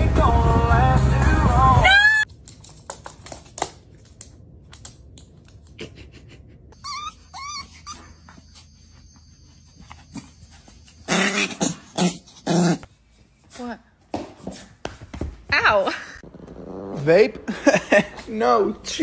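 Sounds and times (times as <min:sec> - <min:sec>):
dog whining: 0:01.8 - 0:02.3, 0:06.8 - 0:09.0.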